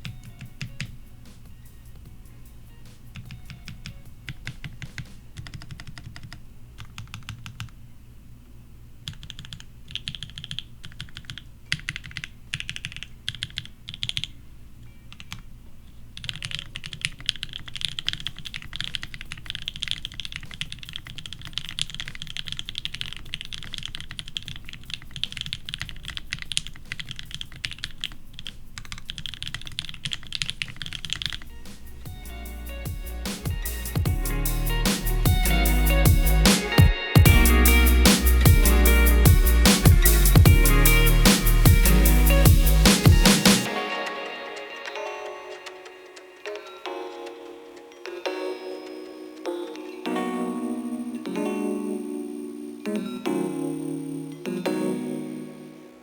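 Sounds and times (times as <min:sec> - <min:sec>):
mechanical keyboard typing: 0:03.2 - 0:07.8, 0:09.0 - 0:14.3, 0:16.2 - 0:31.6.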